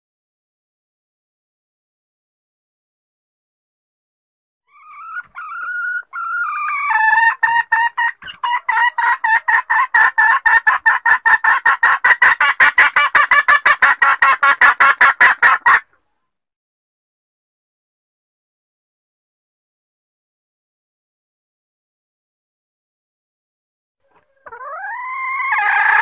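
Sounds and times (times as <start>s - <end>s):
junglefowl hen calling: 4.7s - 16.1s, 24.0s - 26.0s.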